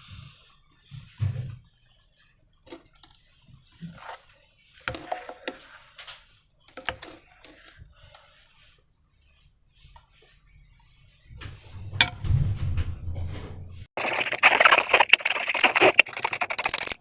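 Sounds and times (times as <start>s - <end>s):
slime squelching: 14.0s - 17.0s.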